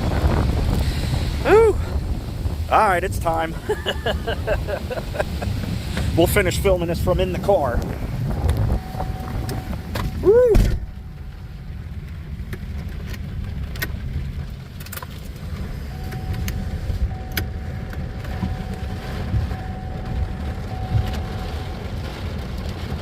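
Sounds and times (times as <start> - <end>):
storm wind and rain buffeting car: 0.0 - 23.0
faint steady tone: 15.8 - 21.9.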